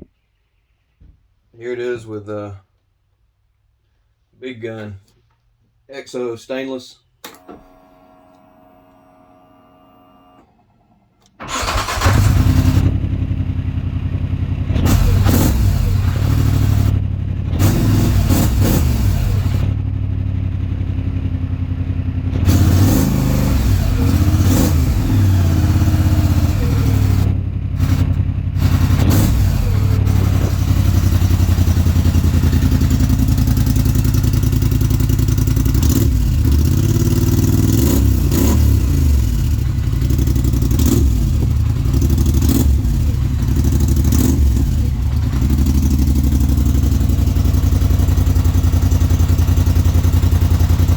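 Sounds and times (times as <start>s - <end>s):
atv engine revving: 11.4s - 50.9s.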